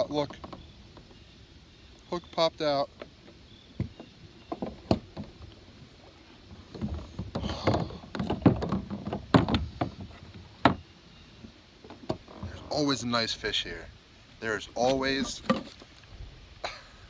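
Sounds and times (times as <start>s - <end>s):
knocks against boat hull: 6.8s - 10.8s.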